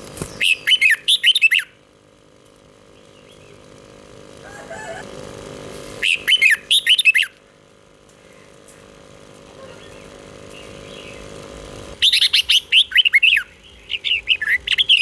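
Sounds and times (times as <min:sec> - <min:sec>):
faint steady hum: 0:00.0 - 0:15.0
bird warbling whistled song: 0:00.3 - 0:01.8, 0:06.0 - 0:07.3, 0:12.0 - 0:15.0.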